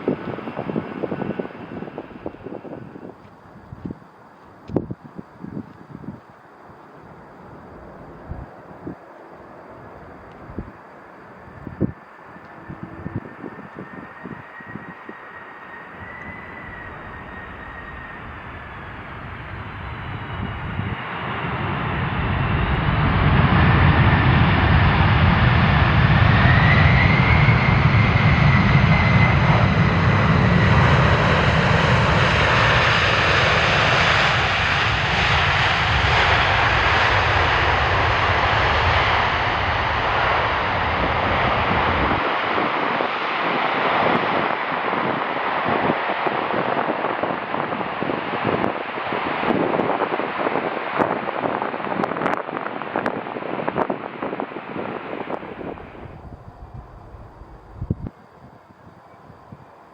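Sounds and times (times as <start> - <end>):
jet airliner engines passing: 0.0 - 59.9.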